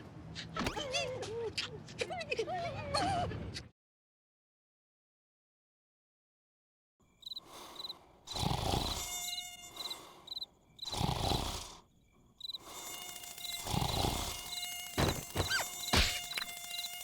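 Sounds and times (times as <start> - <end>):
cartoon insect chirps: 7.2 - 11.7, 12.4 - 17.0
buzzing haze: 7.2 - 17.0.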